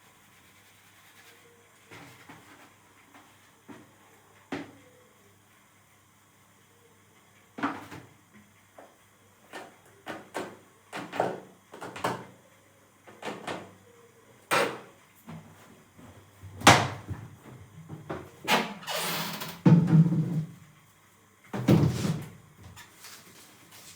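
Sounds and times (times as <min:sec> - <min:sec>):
household knocks and clunks: 0:21.5 - 0:22.3.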